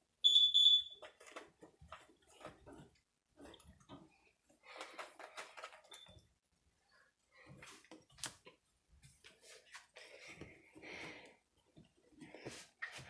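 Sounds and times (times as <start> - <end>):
cockatiel whistled chirp: 0.2 - 1.0
scratching and rustling: 1.0 - 6.1.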